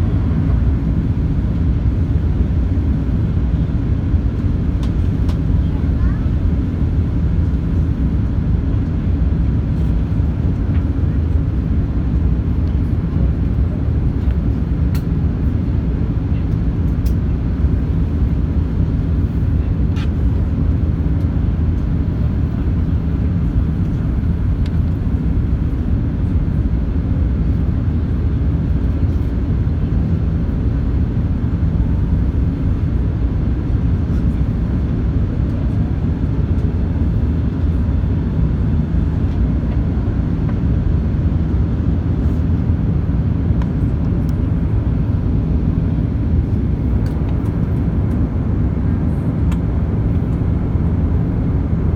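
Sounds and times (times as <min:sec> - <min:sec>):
jet engines rumbling: 0:00.0 - 0:51.9.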